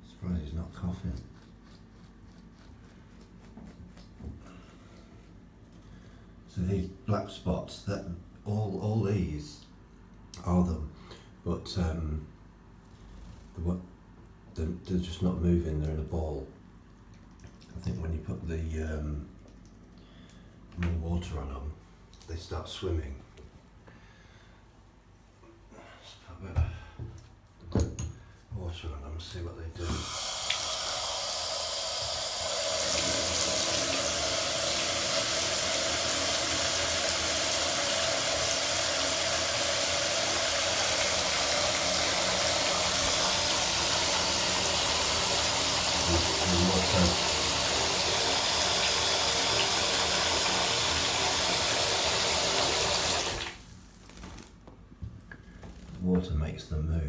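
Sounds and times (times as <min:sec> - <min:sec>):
tap water running into sink: 0:29.8 - 0:53.6.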